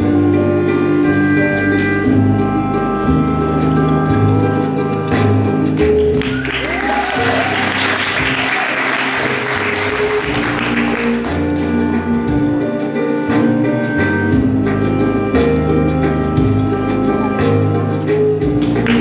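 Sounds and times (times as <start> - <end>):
music playing: 0.0 - 19.0
audience applause: 6.1 - 11.7, 18.6 - 19.0.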